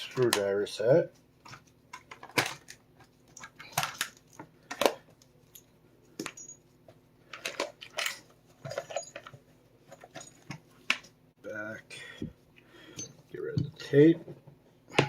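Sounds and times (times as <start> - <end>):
metal tools clinking: 7.4 - 10.5.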